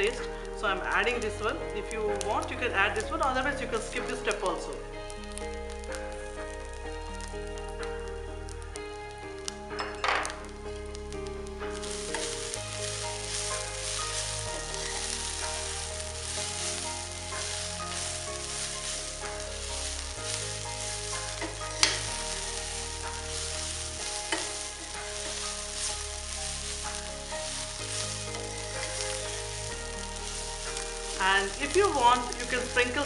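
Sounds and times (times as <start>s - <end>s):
rice sizzling in a pan: 0.0s - 33.0s
scraping strokes in pan: 11.7s - 33.0s.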